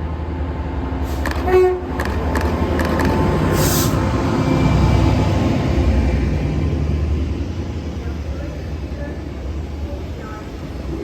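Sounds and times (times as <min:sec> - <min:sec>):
train rumbling past: 0:00.0 - 0:11.0
train horn toot: 0:01.2 - 0:01.9.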